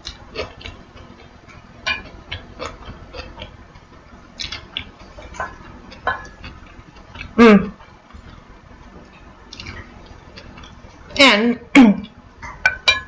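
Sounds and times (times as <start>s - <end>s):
eating clicks and smacks: 0.0s - 3.6s, 4.4s - 7.4s, 9.2s - 10.8s.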